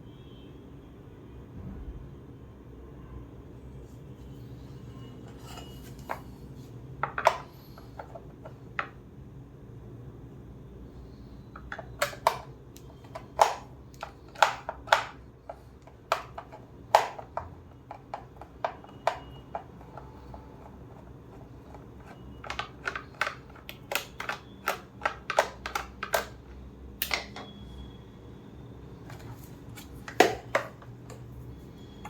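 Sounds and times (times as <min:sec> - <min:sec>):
plastic and metal parts clicking: 0:11.6 - 0:27.5.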